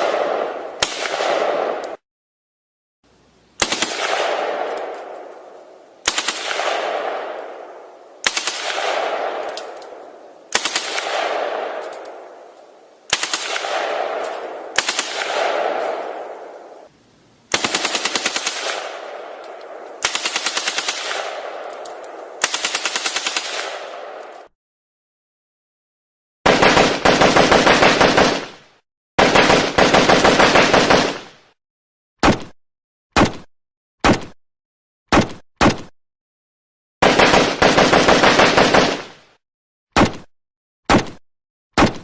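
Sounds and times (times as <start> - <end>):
automatic gunfire with echo: 0.0 - 2.0, 3.6 - 5.3, 6.0 - 12.4, 13.1 - 16.8, 17.5 - 24.3, 26.5 - 28.6, 29.2 - 31.4, 37.0 - 39.4.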